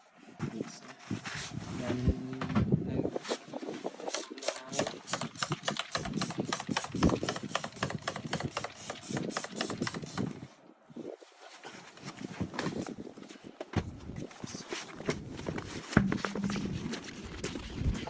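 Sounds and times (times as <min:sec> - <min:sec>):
sharp mechanical clicks and rattles: 0:04.1 - 0:10.4.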